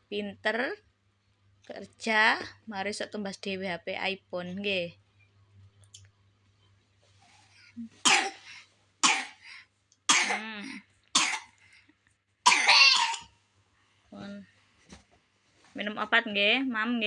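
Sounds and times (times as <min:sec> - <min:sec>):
child coughing: 0:08.1 - 0:08.4, 0:09.0 - 0:09.4, 0:10.1 - 0:10.5, 0:11.2 - 0:11.5, 0:12.5 - 0:13.3.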